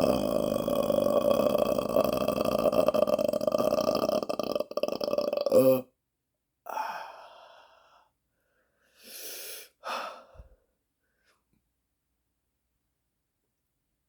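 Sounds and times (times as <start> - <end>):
person sighing and breathing heavily: 0.0 - 5.8, 6.7 - 8.1, 8.9 - 10.6
long burps: 0.0 - 5.9.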